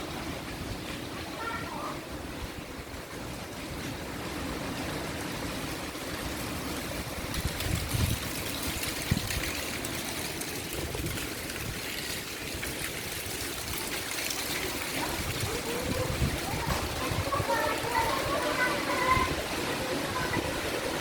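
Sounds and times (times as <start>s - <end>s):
wind buffeting microphone: 6.8s - 21.0s
storm wind rushing: 7.0s - 9.5s, 15.0s - 21.0s.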